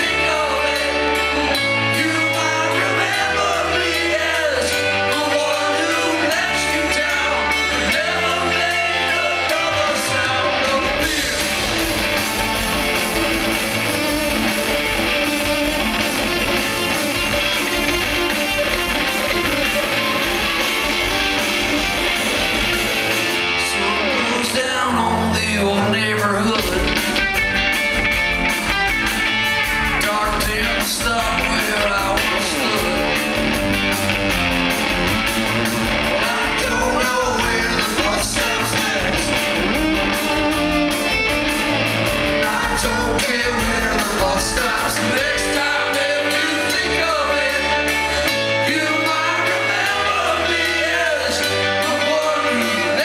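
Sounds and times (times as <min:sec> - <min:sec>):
person singing: 0:00.0 - 0:13.3, 0:23.4 - 0:27.2, 0:29.9 - 0:33.4, 0:36.1 - 0:41.1, 0:42.4 - 0:53.0
live rock band: 0:00.0 - 0:53.0.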